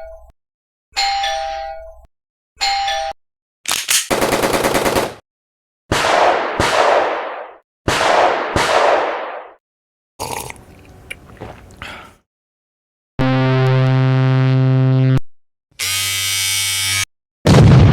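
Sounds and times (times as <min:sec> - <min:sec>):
gunshots with echo: 0:05.9 - 0:09.6.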